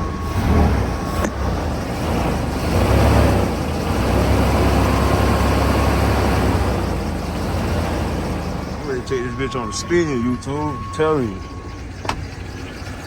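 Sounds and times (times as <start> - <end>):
pickup engine rumbling: 0.0 - 13.0.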